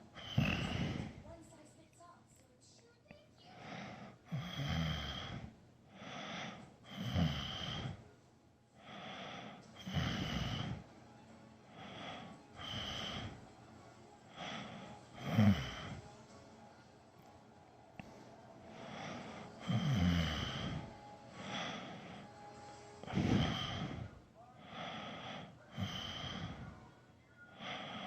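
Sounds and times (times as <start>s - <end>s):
person snoring: 0.0s - 1.2s, 4.3s - 8.0s, 8.8s - 10.8s, 11.8s - 13.4s, 14.4s - 16.0s, 18.9s - 22.2s, 23.0s - 26.8s.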